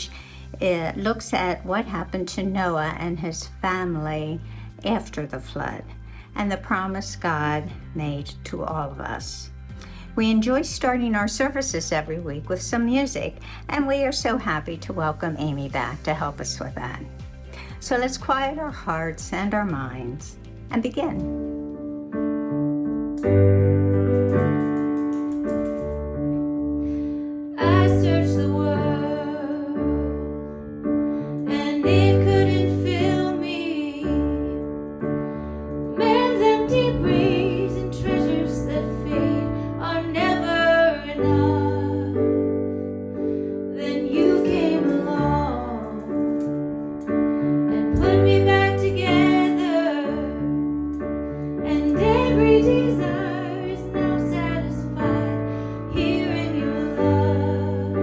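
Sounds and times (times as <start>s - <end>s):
keyboard accompaniment: 19.6s - 58.0s
woman singing: 27.6s - 30.3s, 31.5s - 34.6s, 36.0s - 42.3s, 43.8s - 46.4s, 47.7s - 50.5s, 51.7s - 58.0s.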